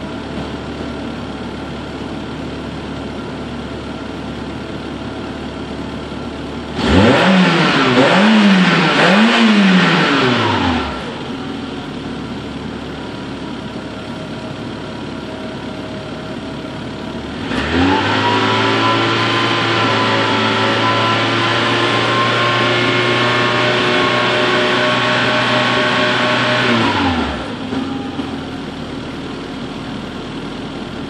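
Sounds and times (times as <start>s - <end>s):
car engine idling and revving: 0.0s - 31.0s.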